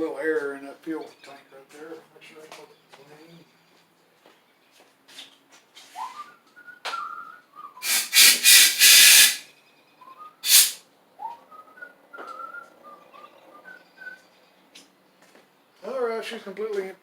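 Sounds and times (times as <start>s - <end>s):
person whistling: 6.0s - 9.4s, 10.1s - 10.8s
compressed air blasts: 7.8s - 9.4s, 10.4s - 10.8s.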